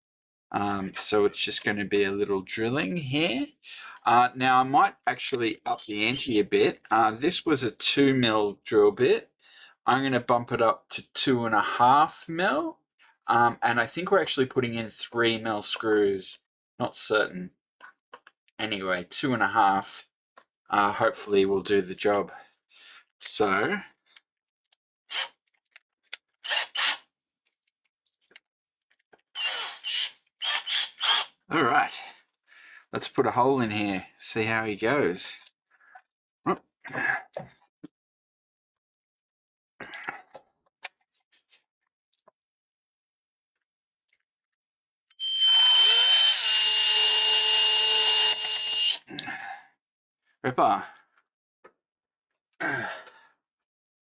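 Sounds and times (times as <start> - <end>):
small clicks of tools: 25.2 - 26.8, 48.3 - 49.3
electric drill whining: 26.4 - 27.0, 29.4 - 31.3, 45.2 - 49.0
rustle of drill bit withdrawn: 26.4 - 27.0, 29.4 - 31.3, 45.2 - 49.0.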